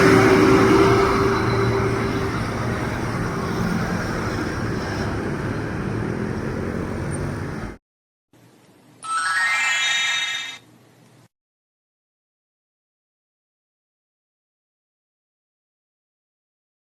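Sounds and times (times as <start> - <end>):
bus engine passing: 0.0 - 7.8
road traffic rumble: 0.0 - 7.8.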